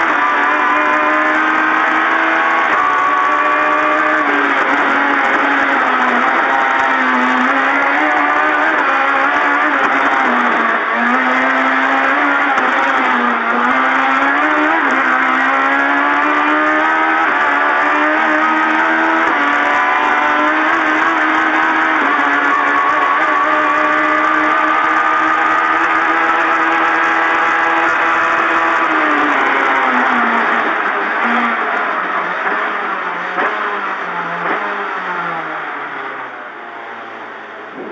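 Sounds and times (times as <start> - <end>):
car engine revving hard: 0.0 - 37.9.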